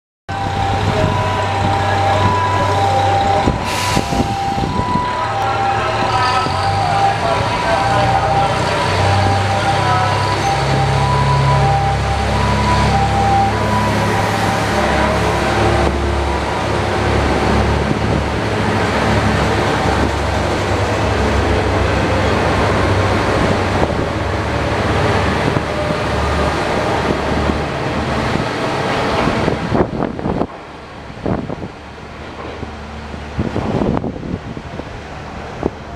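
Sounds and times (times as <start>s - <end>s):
steady higher tones: 0.3s - 28.9s
diesel railcar engine hum: 0.3s - 35.9s
air hiss: 3.6s - 4.3s.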